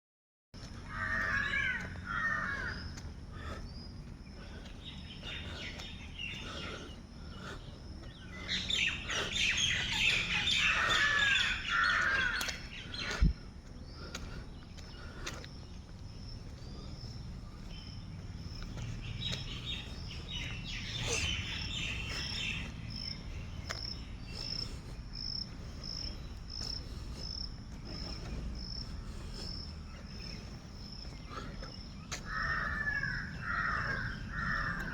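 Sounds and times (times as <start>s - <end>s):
crow cawing: 0.8s - 3.1s, 8.8s - 13.1s, 32.1s - 34.9s
bird chirps: 1.0s - 34.9s.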